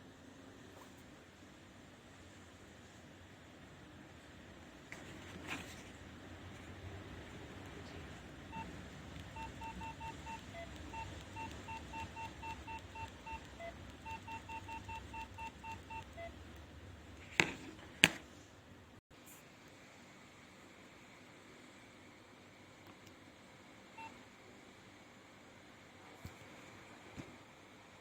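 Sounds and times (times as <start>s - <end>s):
phone beeping ringtone: 8.5s - 8.7s, 9.3s - 16.4s.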